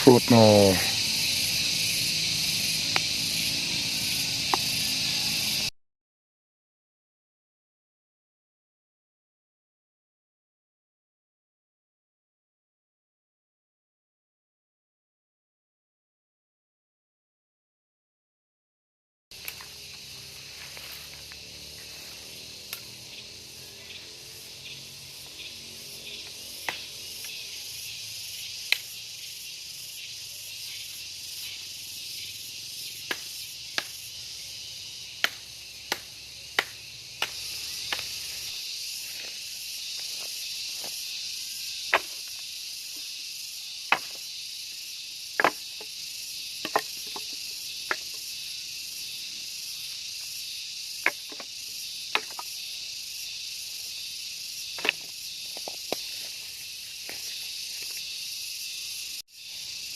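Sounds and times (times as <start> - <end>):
insects droning: 0.0 - 5.7, 19.3 - 59.9.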